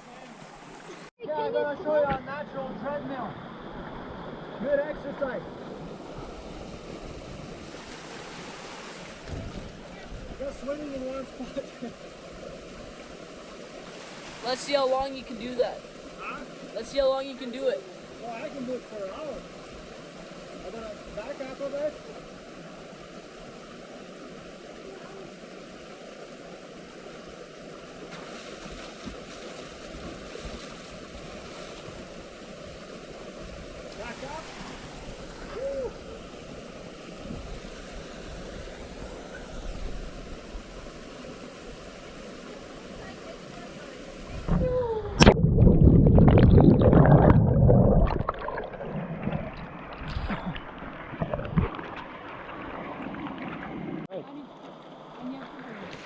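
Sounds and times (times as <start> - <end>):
river water splashing and gurgling: 0.0 - 1.2, 1.8 - 56.0
river water rushing over rocks: 45.2 - 56.0.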